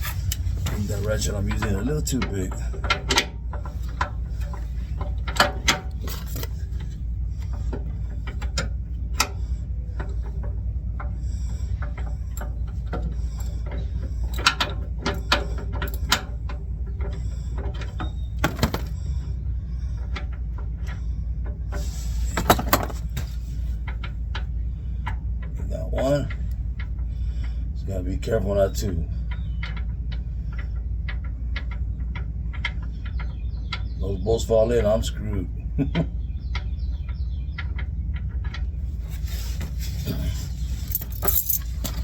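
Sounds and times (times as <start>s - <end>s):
steady low hum: 0.0s - 42.0s
metal tool clinks: 40.8s - 42.0s.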